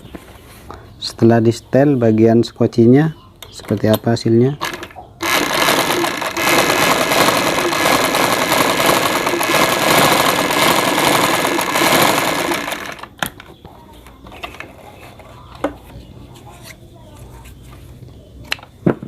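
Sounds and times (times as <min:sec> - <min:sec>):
sewing machine running: 0:04.6 - 0:13.1.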